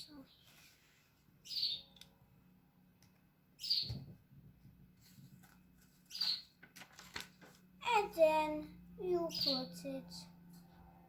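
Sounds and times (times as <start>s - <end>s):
bird chirping: 1.4s - 2.2s, 3.5s - 4.2s, 6.0s - 6.6s, 9.0s - 9.9s.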